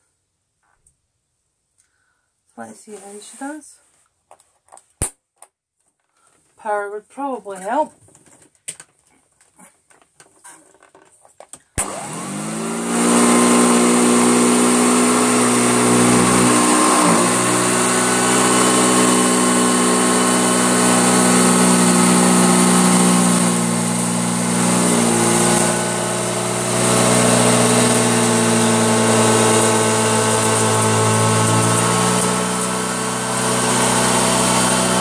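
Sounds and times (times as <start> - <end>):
vacuum cleaner motor running: 11.8 - 35.0.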